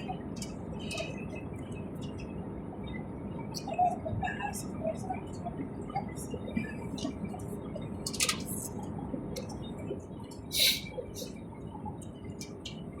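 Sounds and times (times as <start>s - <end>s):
small clicks and rustles: 6.9s - 9.7s.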